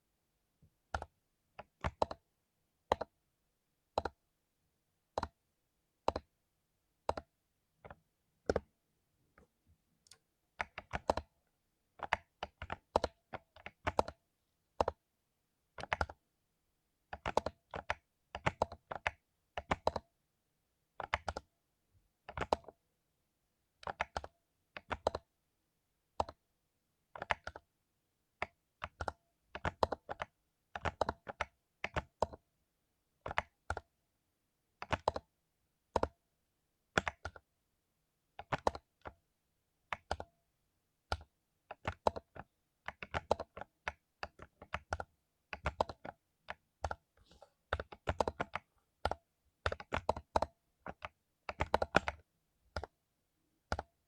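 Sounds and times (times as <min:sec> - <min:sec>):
mechanical keyboard typing: 0:00.9 - 0:02.2, 0:02.9 - 0:03.2, 0:03.9 - 0:04.2, 0:05.1 - 0:05.4, 0:06.0 - 0:06.3, 0:07.0 - 0:08.7, 0:10.1 - 0:11.3, 0:12.0 - 0:14.2, 0:14.8 - 0:15.0, 0:15.8 - 0:16.2, 0:17.1 - 0:20.1, 0:21.0 - 0:21.5, 0:22.2 - 0:22.8, 0:23.8 - 0:25.3, 0:26.2 - 0:26.4, 0:27.2 - 0:27.7, 0:28.4 - 0:32.4, 0:33.2 - 0:33.9, 0:34.8 - 0:35.3, 0:35.9 - 0:36.2, 0:37.0 - 0:37.5, 0:38.4 - 0:39.2, 0:39.9 - 0:40.3, 0:41.1 - 0:47.1, 0:47.7 - 0:53.0, 0:53.6 - 0:54.0.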